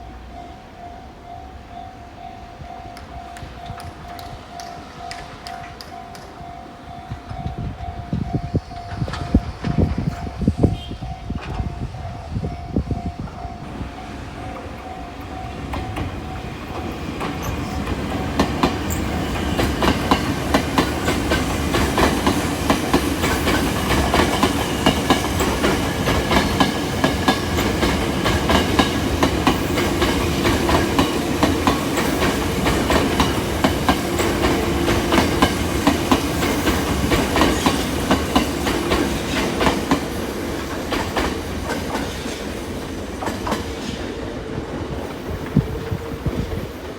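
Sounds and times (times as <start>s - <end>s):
electric train passing: 0.0s - 46.9s
train wheels clacking over rail joints: 14.5s - 46.9s.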